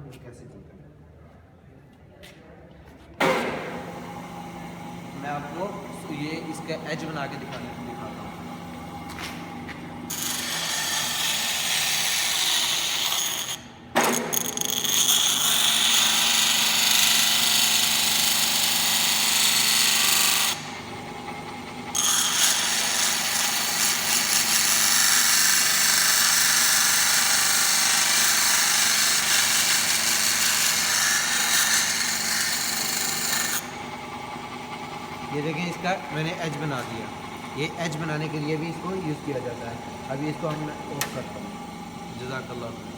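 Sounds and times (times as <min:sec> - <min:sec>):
motor hum: 0:03.2 - 0:13.4, 0:16.9 - 0:42.9
grinder wheel grinding metal: 0:09.1 - 0:20.6, 0:21.9 - 0:33.8.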